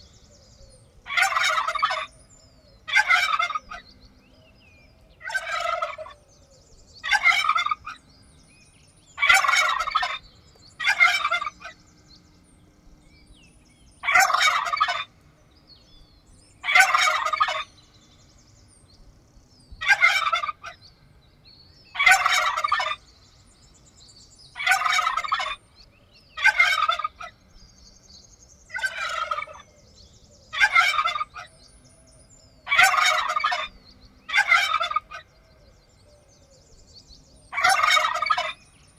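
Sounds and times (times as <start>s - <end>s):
turkey gobbling: 1.1s - 2.1s, 2.8s - 3.8s, 5.2s - 6.2s, 7.0s - 8.0s, 9.2s - 10.2s, 10.8s - 11.8s, 14.0s - 15.1s, 16.6s - 17.7s, 19.8s - 20.8s, 22.0s - 23.0s, 24.6s - 25.6s, 26.4s - 27.4s, 28.7s - 29.7s, 30.6s - 31.5s, 32.7s - 35.3s, 37.5s - 38.6s.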